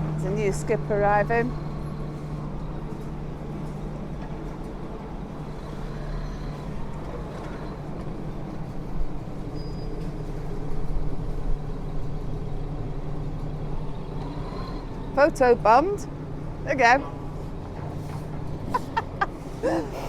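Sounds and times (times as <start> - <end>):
diesel engine running: 0.0 - 9.4.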